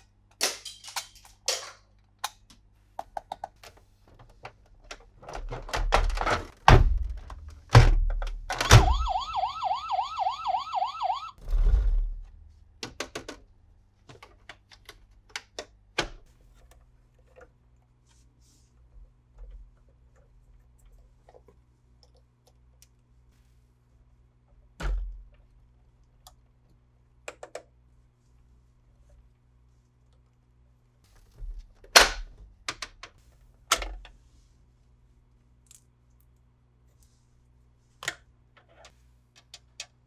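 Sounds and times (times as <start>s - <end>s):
electronic toy siren wailing: 8.7s - 11.4s.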